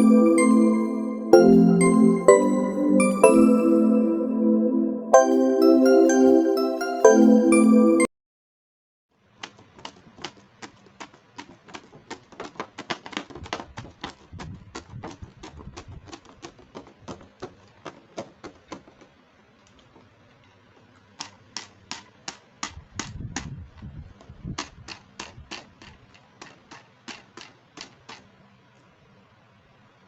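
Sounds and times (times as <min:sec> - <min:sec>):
sharp plastic clicks: 0:21.1 - 0:23.5, 0:24.6 - 0:28.3.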